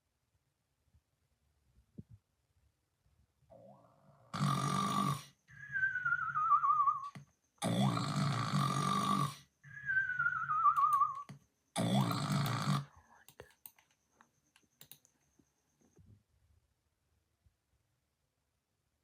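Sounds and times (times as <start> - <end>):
rasping snore: 4.2 - 5.8, 7.6 - 9.9, 11.8 - 13.2
whistling breath sliding down: 5.5 - 7.2, 9.6 - 11.3.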